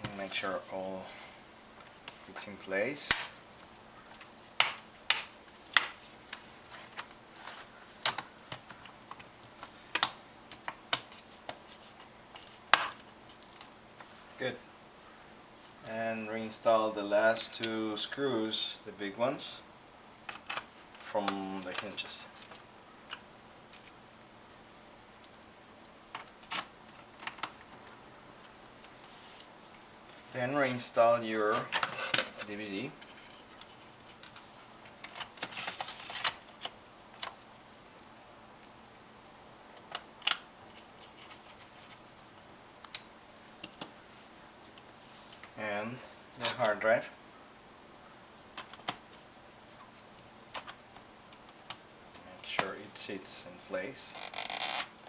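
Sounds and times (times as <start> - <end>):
plastic clips snapping: 3.1 - 3.4.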